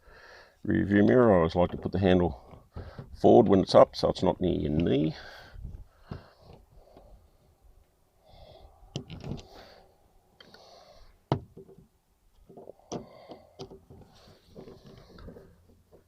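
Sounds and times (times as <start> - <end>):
trim parts scraping: 8.9 - 9.8.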